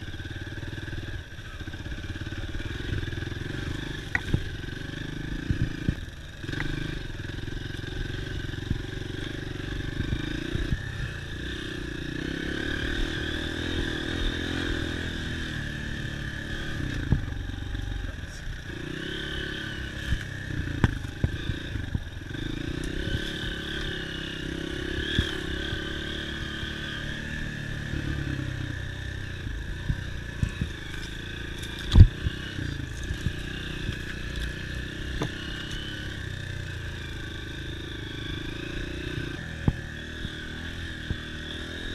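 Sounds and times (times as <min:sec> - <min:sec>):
dirt bike engine revving: 0:00.0 - 0:41.9.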